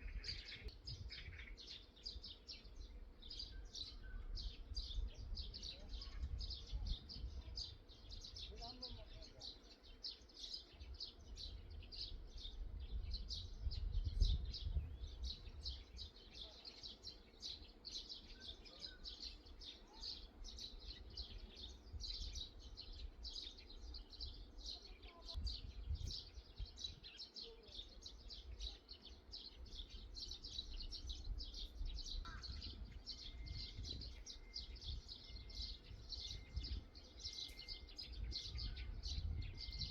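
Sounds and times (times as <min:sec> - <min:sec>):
wind rumble on microphone: 0:00.0 - 0:09.2, 0:10.7 - 0:16.2, 0:20.5 - 0:27.2, 0:29.4 - 0:39.9
birds chirping: 0:00.0 - 0:39.9.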